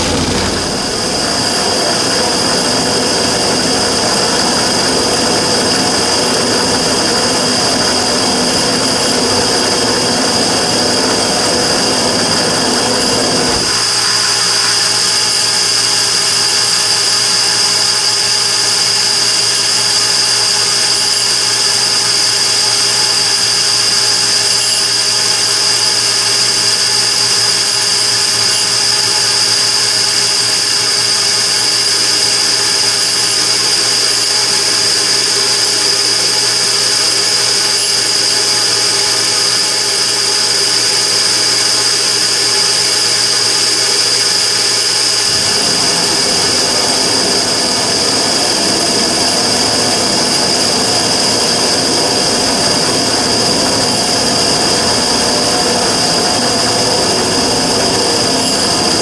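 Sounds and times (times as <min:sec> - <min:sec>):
low rough rumble: 0:00.0 - 0:01.8
high whine: 0:00.0 - 0:02.2, 0:11.4 - 0:59.0
burner running loudly: 0:00.0 - 0:59.0.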